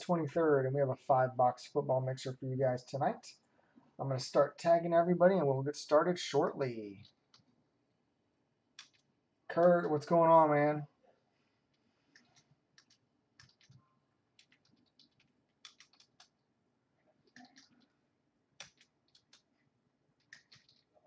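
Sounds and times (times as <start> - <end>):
typing on computer keyboard: 8.8 - 9.7, 12.1 - 13.8, 14.4 - 16.4, 17.2 - 17.9, 18.6 - 19.5, 20.2 - 21.0.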